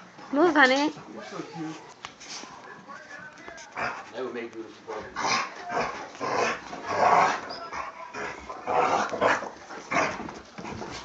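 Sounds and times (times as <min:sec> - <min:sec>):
dogs growling: 0:03.7 - 0:04.2, 0:04.9 - 0:11.0
dogs barking: 0:05.0 - 0:10.3.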